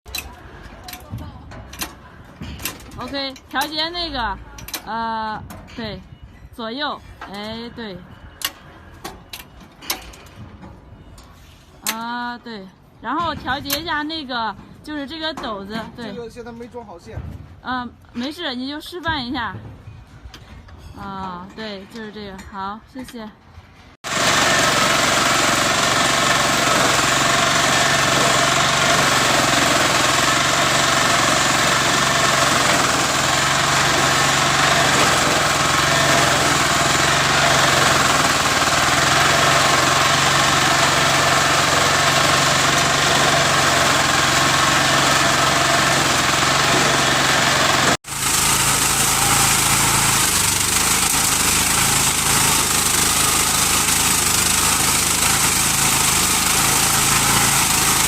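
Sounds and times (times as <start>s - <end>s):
small engine droning: 24.1s - 58.0s.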